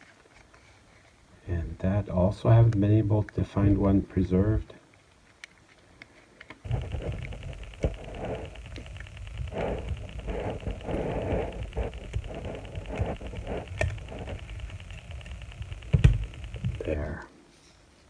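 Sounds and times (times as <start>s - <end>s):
fingers rubbing plastic: 6.6s - 17.0s
small plastic clicks: 6.7s - 17.0s.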